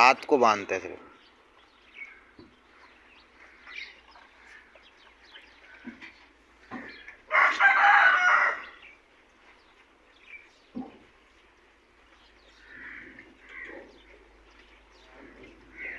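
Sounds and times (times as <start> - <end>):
small birds chirping: 0.0 - 15.9
rooster crowing: 7.3 - 8.8.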